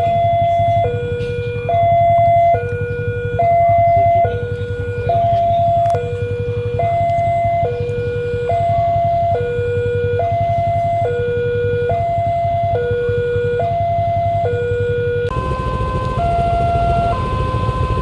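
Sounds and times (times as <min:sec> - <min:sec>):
level crossing two-tone siren: 0:00.0 - 0:18.0
low steady rumble: 0:14.6 - 0:18.0.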